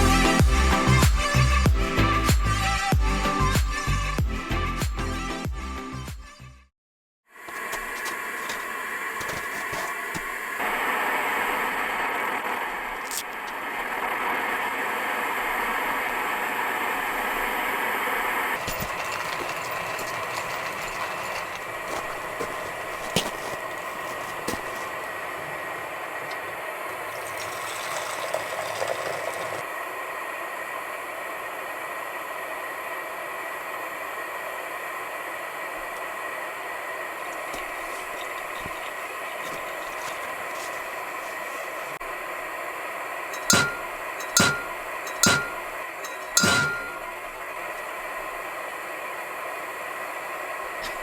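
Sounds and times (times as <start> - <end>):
camp cookware clinking: 7.6 - 10.4, 18.6 - 29.6, 37.4 - 41.9, 43.3 - 47.4.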